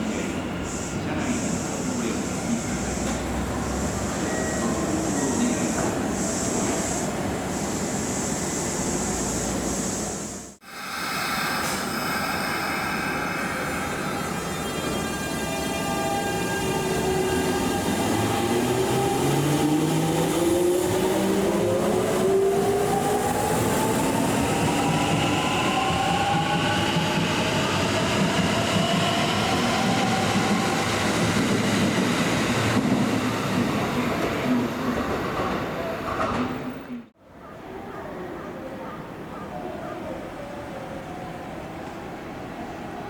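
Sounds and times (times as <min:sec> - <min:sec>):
electric train motor whine: 0:10.7 - 0:19.0.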